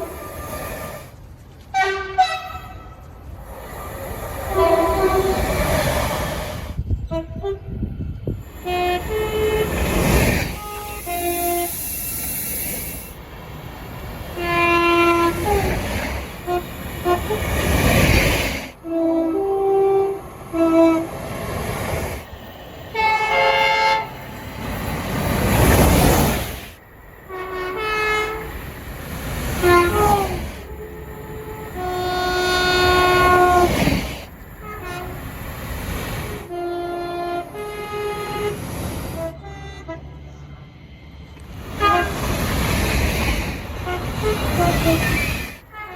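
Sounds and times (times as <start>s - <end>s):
trains running by: 0.0s - 45.9s
train air horn chords: 1.7s - 3.2s, 4.4s - 5.7s, 7.0s - 12.4s, 14.4s - 15.8s, 16.4s - 17.6s, 18.8s - 21.2s, 22.9s - 24.2s, 27.3s - 28.5s, 29.5s - 33.9s, 34.6s - 35.3s, 36.4s - 40.4s, 41.8s - 42.3s, 43.8s - 45.9s.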